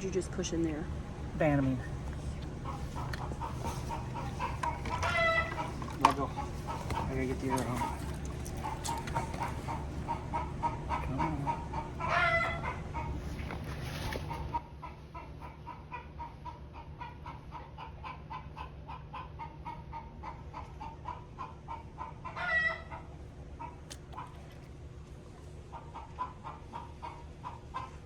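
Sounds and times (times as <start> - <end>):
chickens clucking: 0.0 - 24.6, 25.4 - 28.0
chicken squawk: 2.6 - 23.7.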